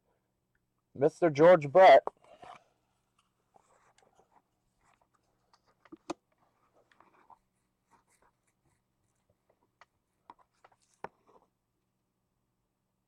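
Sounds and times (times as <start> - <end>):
trading cards rustling and scraping: 2.2 - 2.8, 3.4 - 11.5.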